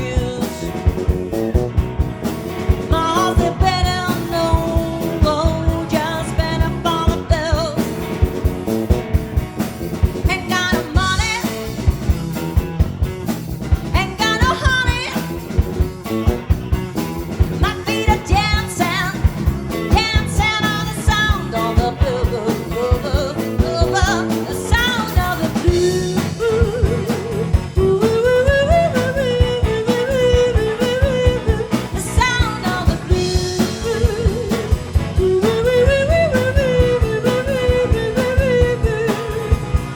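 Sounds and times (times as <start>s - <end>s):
lead vocal singing: 0.0s - 1.3s, 2.7s - 8.1s, 19.9s - 39.9s
blues band playing: 0.0s - 39.9s.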